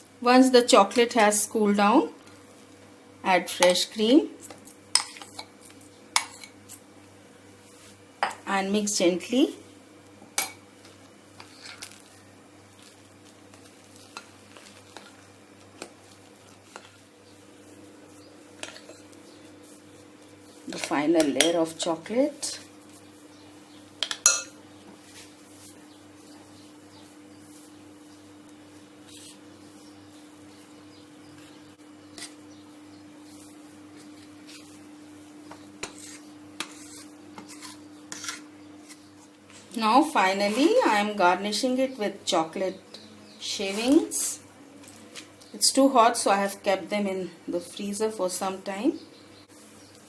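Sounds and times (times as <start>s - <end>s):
utensil scraping a bowl: 35.5s - 39.2s.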